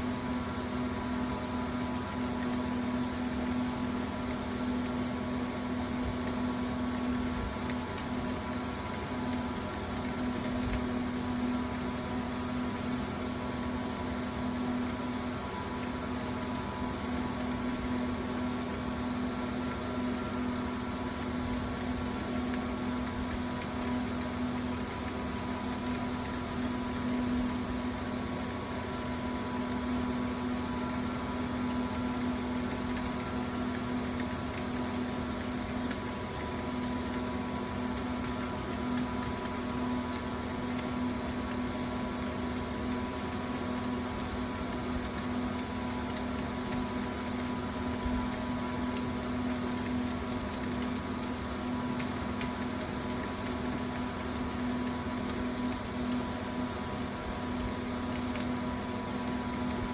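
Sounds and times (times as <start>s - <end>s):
steady machine hum: 0.0s - 59.9s.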